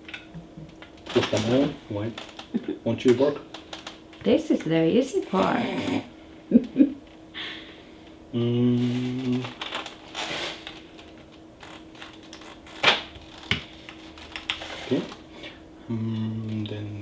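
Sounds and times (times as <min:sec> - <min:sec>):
steady low tone: 0:08.3 - 0:09.5.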